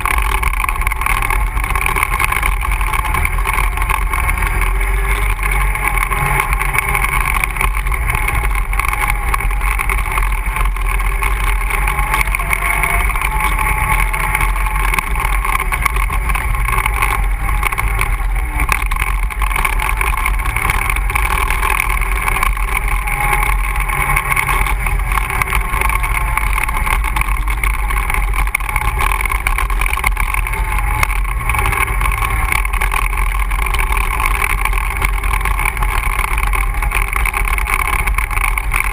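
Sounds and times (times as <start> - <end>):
atv engine running steadily: 0.0 - 38.9.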